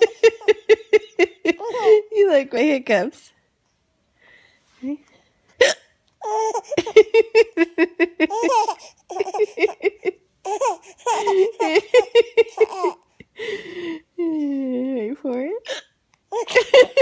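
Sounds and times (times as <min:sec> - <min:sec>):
baby giggling: 0:00.0 - 0:02.1, 0:05.6 - 0:13.1, 0:16.3 - 0:17.0.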